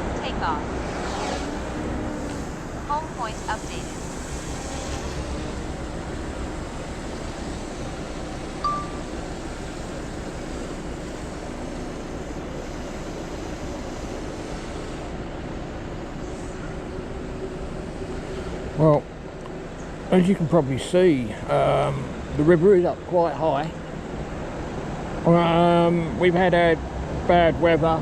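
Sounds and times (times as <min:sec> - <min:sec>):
short electronic beep: 0:08.6 - 0:09.1.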